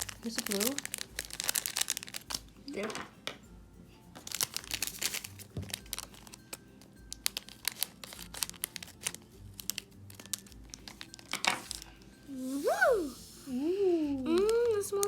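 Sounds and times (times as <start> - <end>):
plastic packet crinkling: 0.0 - 2.5, 4.2 - 11.9
faint background music: 0.0 - 15.0.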